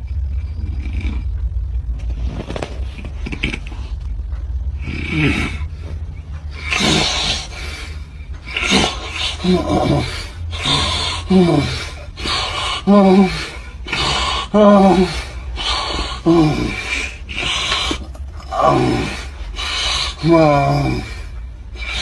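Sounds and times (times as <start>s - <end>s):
steady low hum: 0.0s - 22.0s
man snoring: 4.8s - 5.7s, 6.6s - 21.2s.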